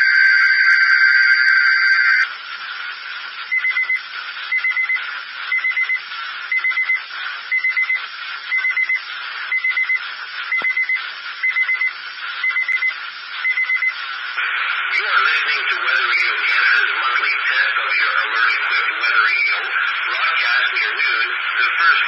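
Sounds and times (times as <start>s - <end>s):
radio alert alarm beeping: 0.0s - 2.3s
radio hiss: 0.0s - 22.0s.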